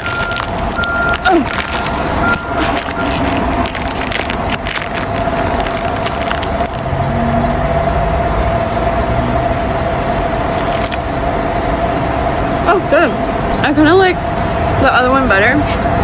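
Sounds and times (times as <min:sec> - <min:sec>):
snack packet crackling: 0:00.0 - 0:07.5, 0:10.1 - 0:11.0.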